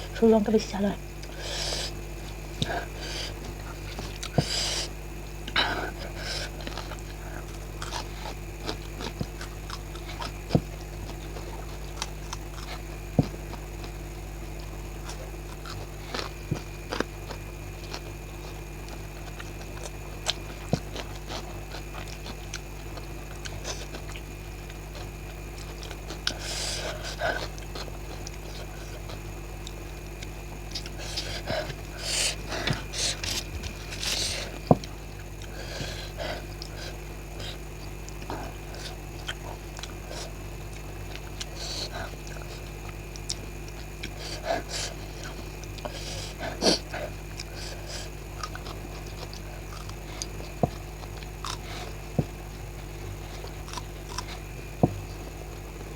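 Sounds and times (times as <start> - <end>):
steady low hum: 0.0 - 55.9
crunching bites: 1.2 - 55.9
chewing mouth noise: 6.4 - 14.0, 36.5 - 55.3.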